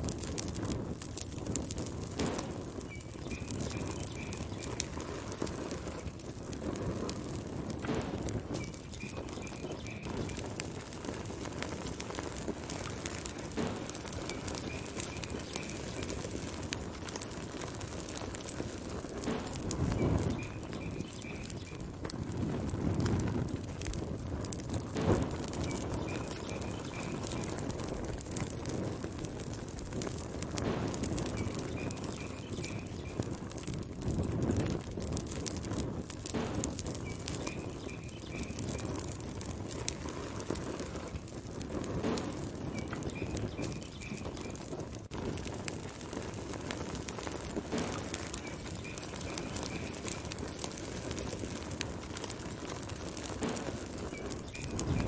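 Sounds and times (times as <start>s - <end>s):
low rush of flames: 0.0s - 55.0s
wood fire crackling and popping: 0.0s - 55.0s
high bird-like chirps: 2.9s - 5.2s, 8.5s - 10.5s, 14.1s - 16.3s, 19.8s - 21.8s, 25.6s - 27.6s, 31.2s - 33.2s, 37.0s - 39.0s, 42.7s - 44.6s, 48.0s - 50.4s, 54.0s - 55.0s.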